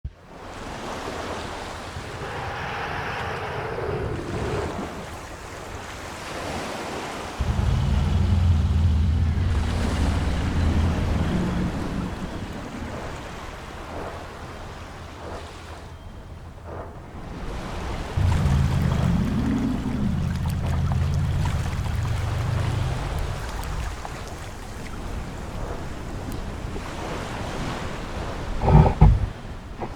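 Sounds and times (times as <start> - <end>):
deep monster snore: 2.0 - 5.3, 7.4 - 13.7, 18.2 - 24.4, 28.6 - 29.9
steady rain: 7.4 - 13.3, 18.2 - 24.4.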